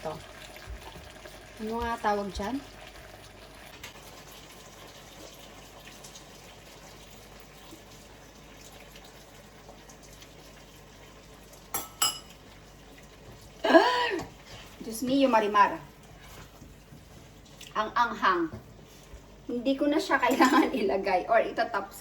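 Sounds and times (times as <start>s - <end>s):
utensil clinking against pot: 11.7s - 12.4s.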